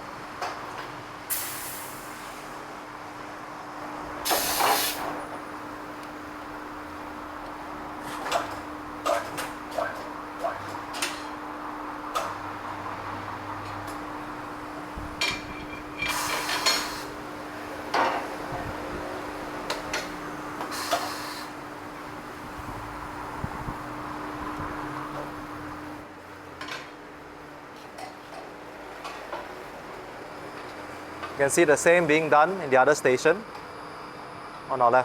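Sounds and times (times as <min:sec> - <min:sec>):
air hissing: 0:01.3 - 0:02.4, 0:04.2 - 0:05.2, 0:16.0 - 0:17.2, 0:20.6 - 0:21.6
steady machine hum: 0:05.2 - 0:26.1
metal tools clanking on rims: 0:15.2 - 0:17.0.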